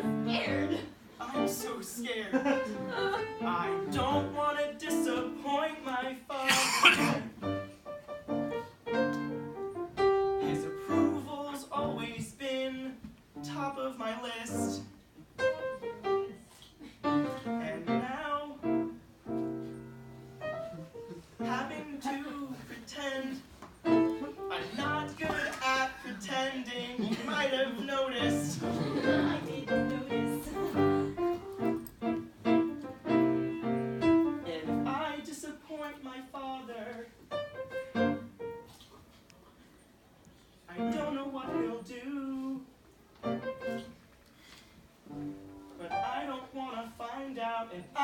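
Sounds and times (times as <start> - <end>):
piano accompaniment: 0.0 - 1.8, 2.4 - 5.6, 7.0 - 12.4, 14.5 - 22.1, 23.8 - 25.3, 27.7 - 35.2, 37.3 - 38.8, 40.8 - 41.8, 43.2 - 44.1, 45.0 - 46.6.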